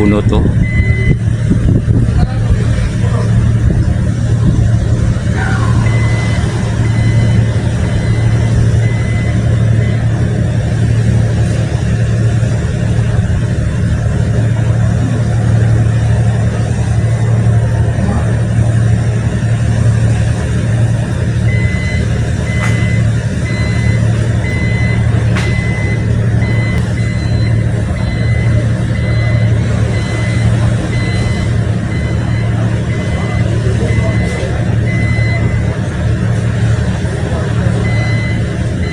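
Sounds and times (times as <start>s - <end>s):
warning alarm beeping: 0.0s - 1.5s, 5.1s - 12.3s, 18.2s - 38.9s
diesel engine droning: 0.0s - 38.9s.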